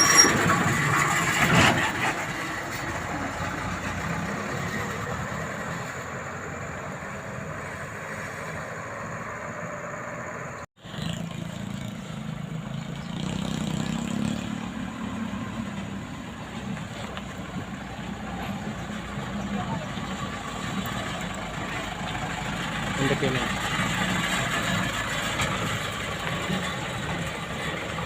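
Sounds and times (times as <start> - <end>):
vehicle engine running: 0.0 - 28.0.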